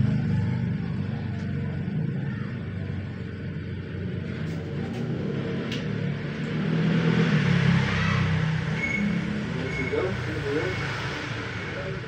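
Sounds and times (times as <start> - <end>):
vehicle engine rumbling: 0.0 - 12.0.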